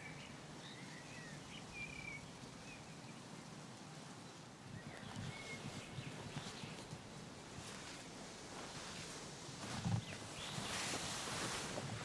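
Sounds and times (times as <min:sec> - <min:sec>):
birds chirping: 0:04.7 - 0:07.1, 0:09.7 - 0:11.2.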